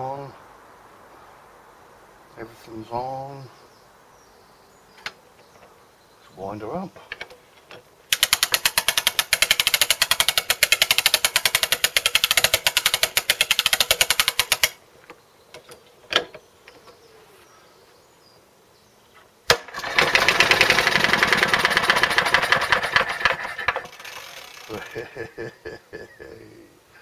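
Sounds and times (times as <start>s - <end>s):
spring starter ratchet clicking: 8.1s - 14.8s, 19.5s - 25.1s
engine clattering over: 19.5s - 25.2s.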